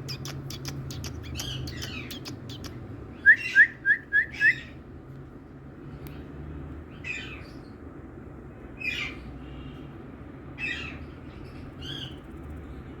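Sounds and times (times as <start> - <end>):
parakeet squawking: 0.0 - 2.8.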